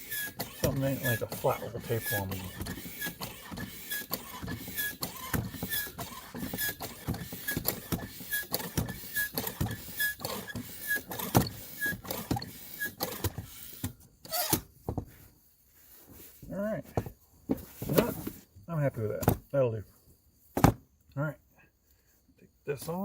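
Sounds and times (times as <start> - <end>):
bicycle pump squeaking strokes: 0.0 - 14.6.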